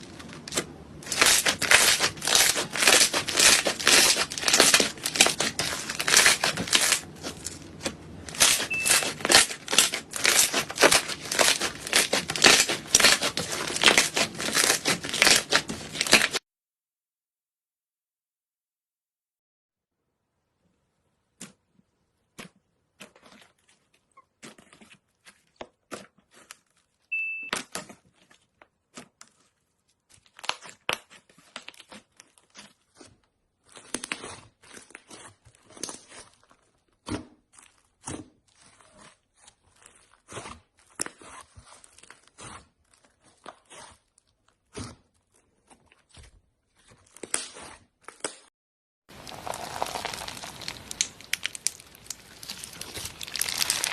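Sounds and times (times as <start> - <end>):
slime popping and crackling: 0.1 - 16.4, 49.1 - 53.9.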